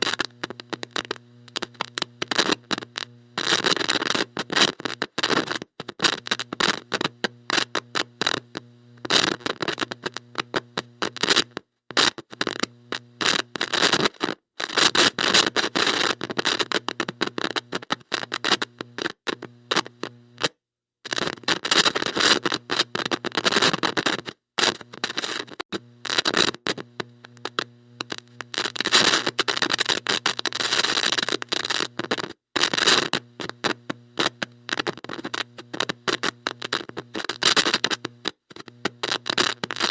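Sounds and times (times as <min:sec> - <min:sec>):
crackling electrical static: 0:00.0 - 0:39.9
low buzzing hum: 0:26.8 - 0:28.8.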